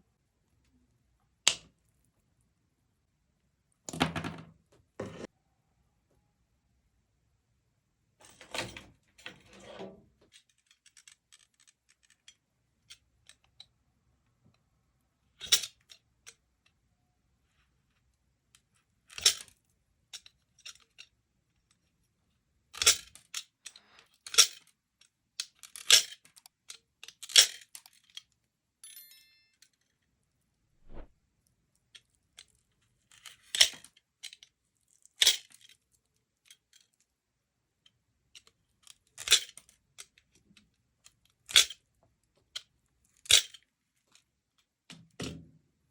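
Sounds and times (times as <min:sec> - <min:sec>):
faint scrape: 0:30.8 - 0:31.1.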